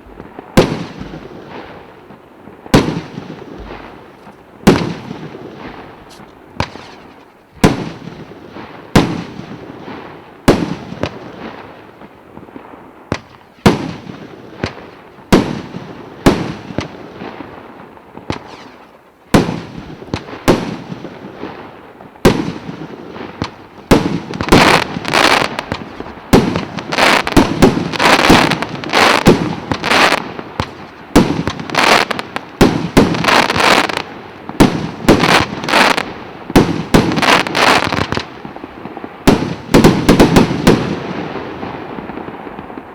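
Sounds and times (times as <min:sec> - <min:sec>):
firework bangs with rumbling tail: 0:00.0 - 0:09.9
firework crackling bursts: 0:00.0 - 0:42.9.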